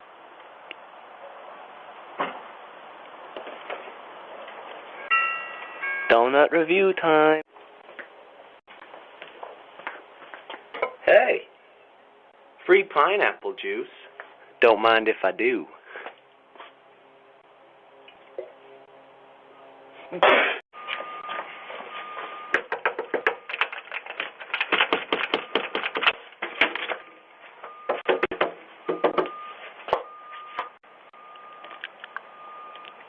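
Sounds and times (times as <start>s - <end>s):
rapid clicking and clattering: 22.6s - 26.8s.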